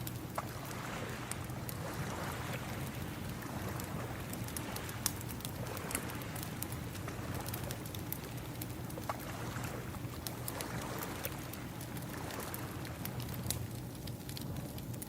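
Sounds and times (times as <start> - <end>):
crackling wood fire: 0.0 - 15.0
ocean waves: 0.4 - 13.6.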